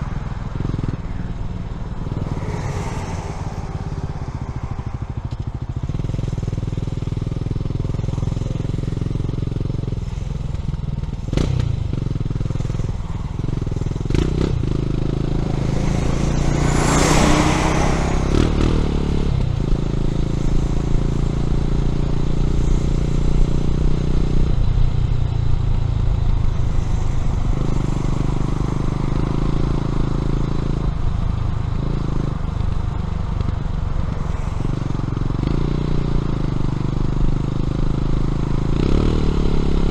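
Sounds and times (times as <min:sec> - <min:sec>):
whooshing: 0:00.0 - 0:07.4, 0:11.3 - 0:21.3
motorcycle engine running: 0:00.0 - 0:39.9.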